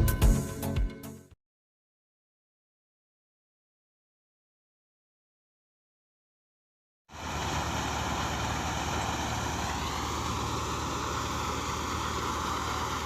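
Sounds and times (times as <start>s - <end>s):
engine running steadily: 7.1s - 13.0s.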